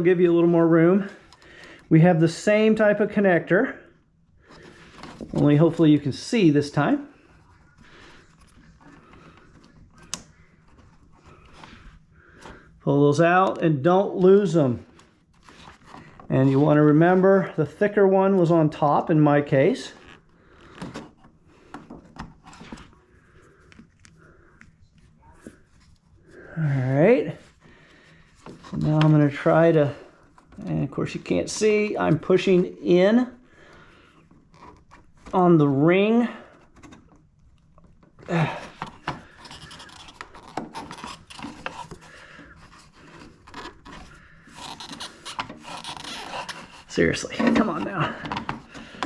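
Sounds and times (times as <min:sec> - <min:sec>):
hands handling plastic fittings: 0:20.0 - 0:26.1, 0:36.6 - 0:49.0
scraping and rubbing: 0:38.4 - 0:49.0.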